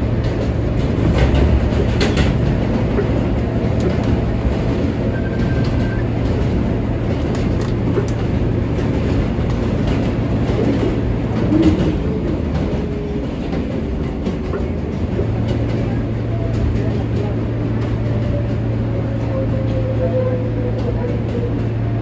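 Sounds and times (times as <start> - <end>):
subway train rumbling: 0.0 - 22.0
wheels clicking on rails: 0.2 - 20.0.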